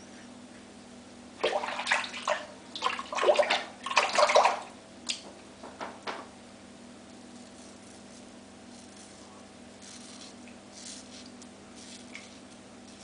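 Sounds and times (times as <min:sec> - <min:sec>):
water splashing at a sink: 0:01.4 - 0:05.2.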